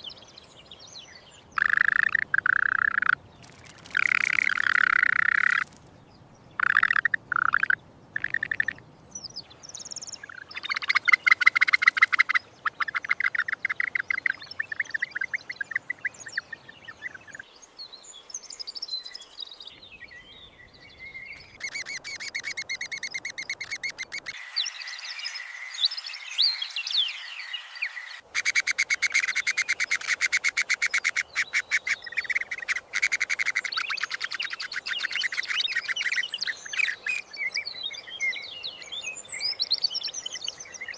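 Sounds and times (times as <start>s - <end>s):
birds chirping and trilling: 0.0s - 40.9s.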